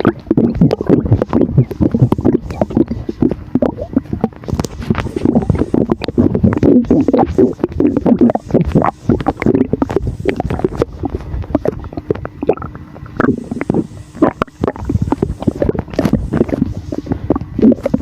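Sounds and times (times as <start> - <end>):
stomach gurgling: 0.0 - 18.0.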